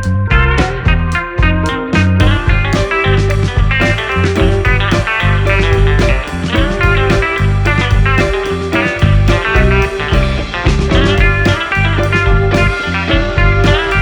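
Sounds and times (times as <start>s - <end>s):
plucked guitar: 0.0s - 14.0s
beat with heavy bass: 2.2s - 14.0s.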